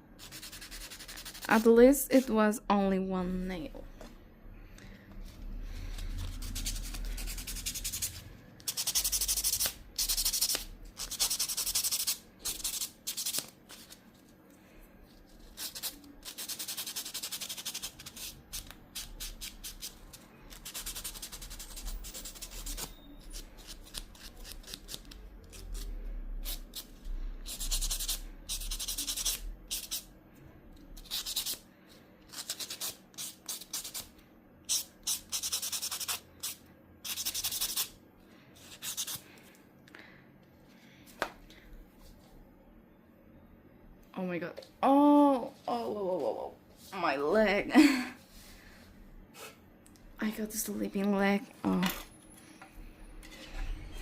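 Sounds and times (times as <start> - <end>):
nail file scratching fingernail: 0.2 - 1.6, 5.9 - 14.0, 15.4 - 30.1, 31.0 - 31.6, 32.3 - 34.1, 34.7 - 38.0, 38.6 - 39.2.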